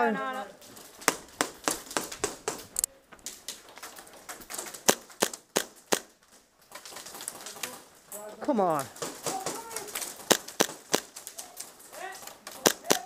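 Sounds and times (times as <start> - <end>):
airsoft gun cracks: 4.6 - 6.1, 9.0 - 11.6, 12.5 - 13.0.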